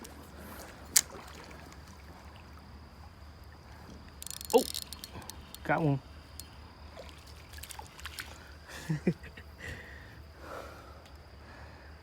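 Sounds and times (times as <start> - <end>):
small water splashes: 0.0 - 3.1, 6.9 - 8.7
running creek water: 0.0 - 10.1.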